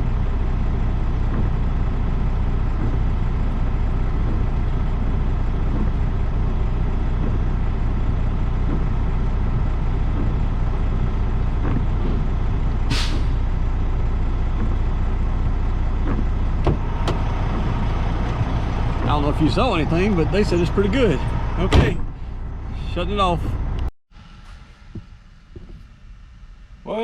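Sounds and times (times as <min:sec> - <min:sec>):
diesel truck engine idling: 0:00.0 - 0:23.9
air brakes hissing: 0:12.9 - 0:13.6.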